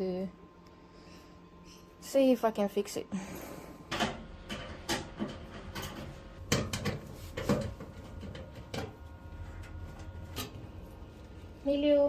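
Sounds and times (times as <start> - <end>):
knocks and clunks on washing machine: 3.9 - 9.0.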